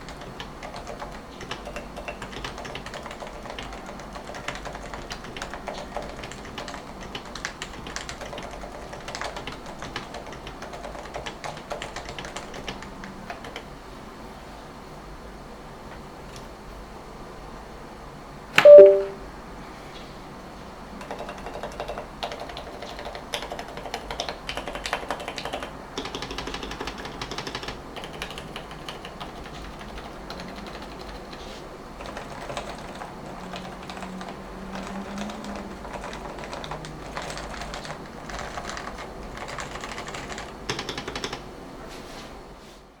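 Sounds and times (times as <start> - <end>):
keyboard typing: 0.0 - 13.6, 18.6 - 19.2, 21.0 - 31.4, 32.0 - 41.4.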